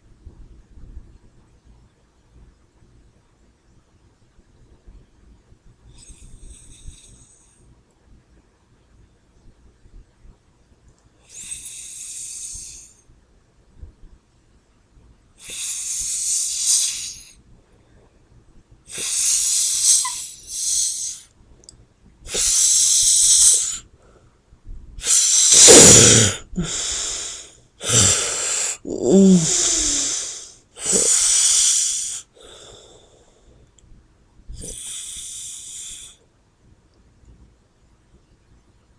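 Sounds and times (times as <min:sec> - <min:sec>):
wheezing snort: 0:11.2 - 0:13.0, 0:15.4 - 0:17.4, 0:18.9 - 0:21.3, 0:22.3 - 0:23.9, 0:25.0 - 0:33.2, 0:34.5 - 0:36.2
person snoring: 0:11.3 - 0:12.9, 0:15.4 - 0:17.3, 0:18.9 - 0:21.3, 0:22.3 - 0:23.8, 0:25.0 - 0:33.2, 0:34.5 - 0:36.2.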